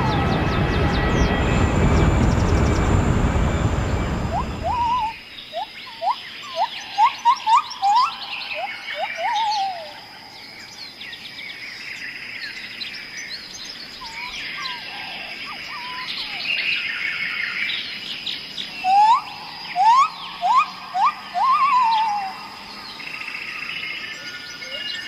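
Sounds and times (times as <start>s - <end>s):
loud rising whistles: 0.0s - 10.0s, 18.8s - 23.7s
steady high-pitched hum: 0.0s - 11.1s, 13.6s - 25.0s
songbirds chirping and trilling: 0.0s - 25.0s.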